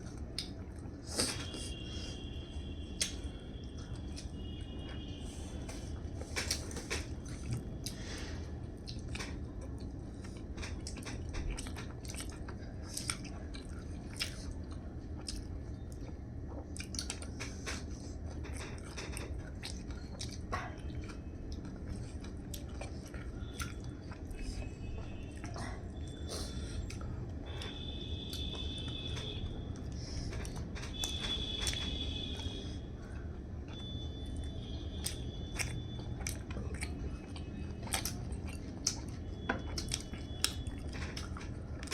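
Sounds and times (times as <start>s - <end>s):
person chewing crunchy food: 0.0s - 33.1s, 33.7s - 41.9s
steady low hum: 0.0s - 41.9s.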